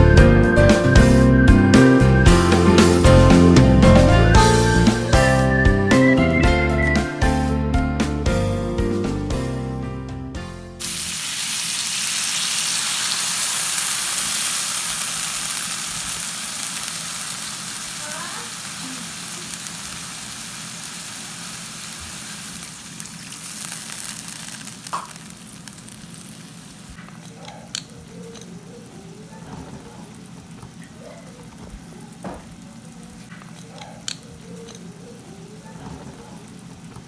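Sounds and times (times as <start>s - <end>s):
food sizzling in a hot pan: 10.8s - 27.0s, 28.9s - 33.3s, 34.5s - 37.0s.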